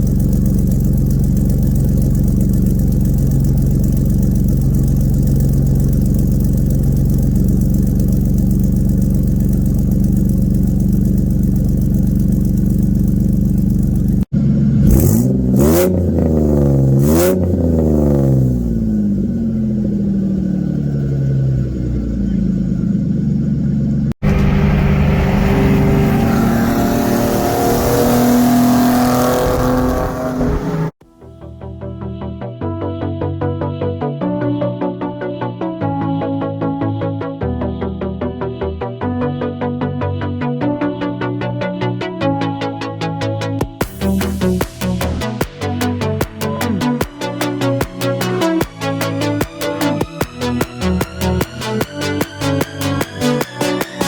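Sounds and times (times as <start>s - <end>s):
car engine revving: 0.0s - 31.0s, 42.7s - 54.0s
music: 31.0s - 54.0s.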